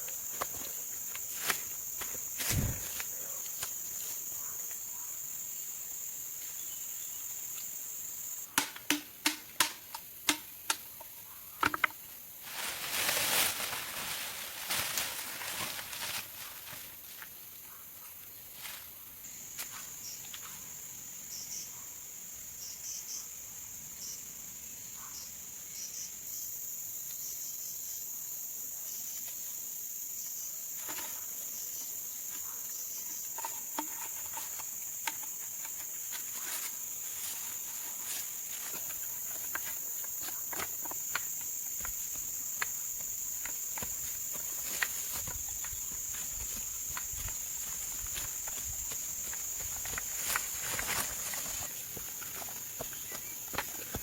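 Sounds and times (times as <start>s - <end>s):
higher insect drone: 0.0s - 8.5s, 29.8s - 54.0s
insects droning: 0.0s - 54.0s.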